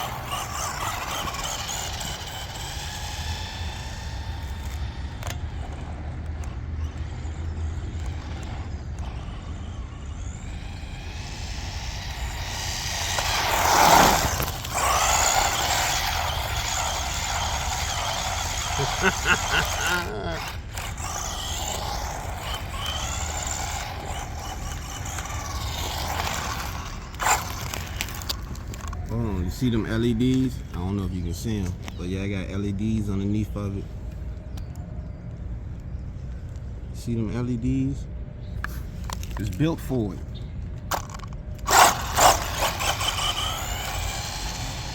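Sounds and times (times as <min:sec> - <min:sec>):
electric motor whining: 0:00.0 - 0:30.8, 0:40.9 - 0:44.9.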